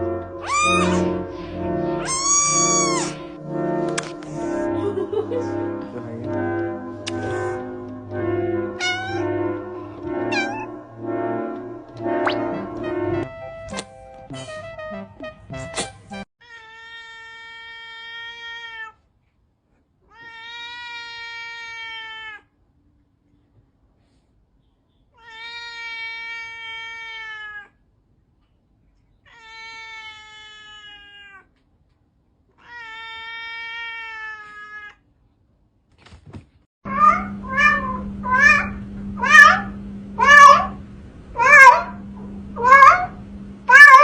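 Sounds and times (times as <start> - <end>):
steady low hum: 0.0 - 15.4, 36.9 - 44.0
cat meowing: 0.4 - 1.1, 2.0 - 3.2, 8.8 - 9.3, 16.4 - 19.0, 20.1 - 22.5, 25.2 - 27.8, 29.2 - 31.5, 32.6 - 35.0, 36.9 - 40.8, 41.4 - 42.0, 42.6 - 43.1, 43.7 - 44.0.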